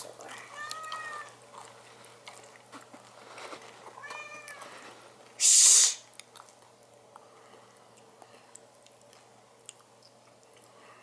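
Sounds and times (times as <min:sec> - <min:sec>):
cat meowing: 0:00.3 - 0:01.4, 0:04.0 - 0:04.7
short loud hissing: 0:05.4 - 0:06.0.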